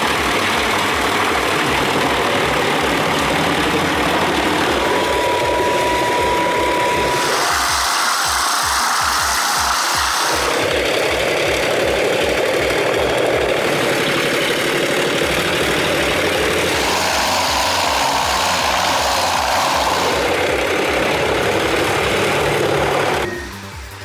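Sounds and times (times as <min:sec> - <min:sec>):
heavy machine engine running: 0:00.0 - 0:24.0.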